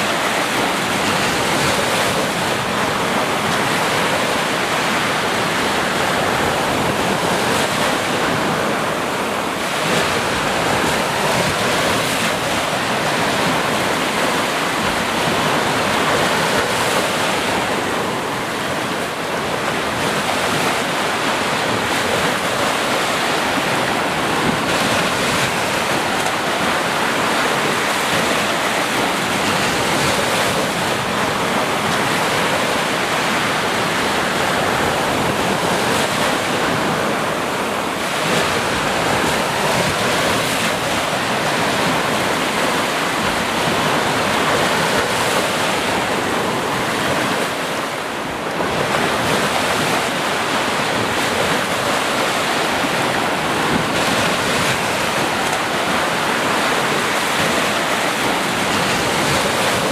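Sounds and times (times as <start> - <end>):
sea waves breaking: 0.0 - 59.9.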